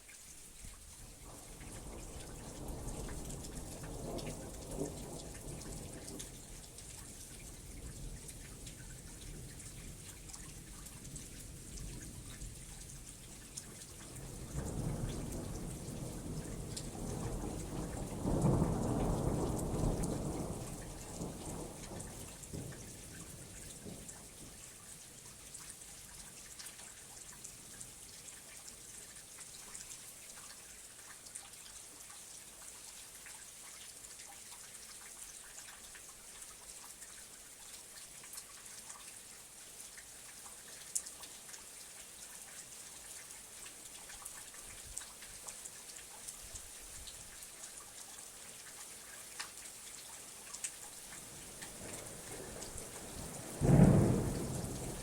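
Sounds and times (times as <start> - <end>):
steady rain hiss: 0.0 - 55.0.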